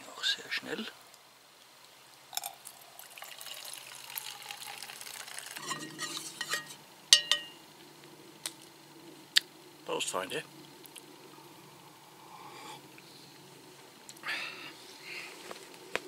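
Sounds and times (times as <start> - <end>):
coffee pouring into a cup: 2.3 - 6.7
pot and cup clinking: 3.2 - 7.6.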